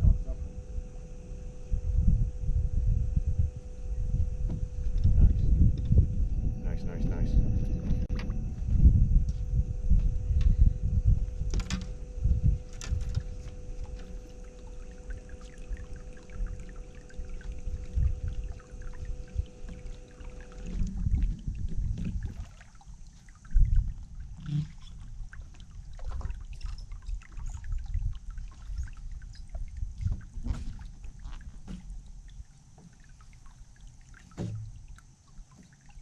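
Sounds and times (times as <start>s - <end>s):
electric motor humming: 0.0s - 22.3s
water lapping against boat hull: 3.2s - 6.4s, 7.7s - 36.0s.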